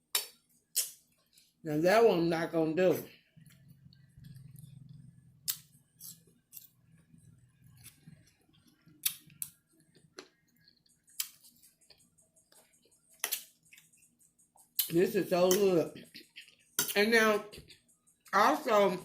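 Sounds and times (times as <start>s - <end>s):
mouth clicks and smacks chewing: 3.4s - 6.7s, 7.8s - 14.0s, 14.6s - 15.0s, 16.0s - 18.3s.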